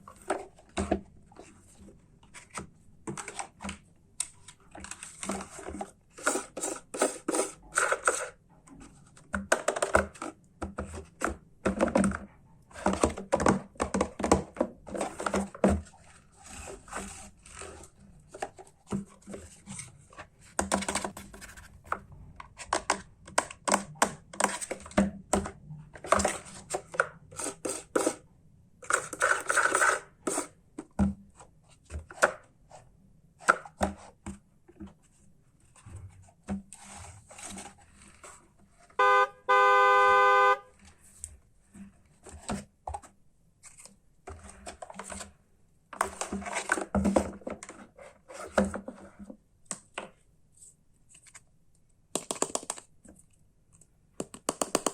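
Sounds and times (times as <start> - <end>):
hard plastic clicks and clatters: 2.3 - 16.0, 52.1 - 54.9.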